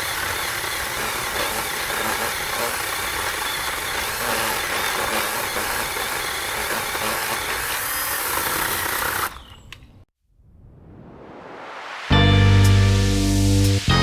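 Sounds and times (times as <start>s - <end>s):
electric chainsaw cutting wood: 0.0s - 9.6s.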